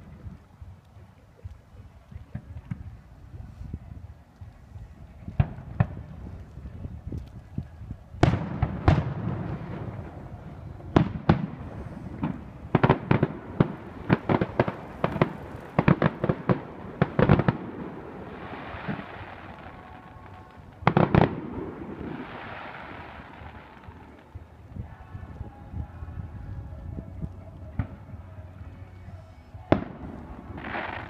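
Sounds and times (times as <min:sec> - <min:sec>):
fireworks bangs: 0:08.2 - 0:24.5, 0:29.6 - 0:31.0.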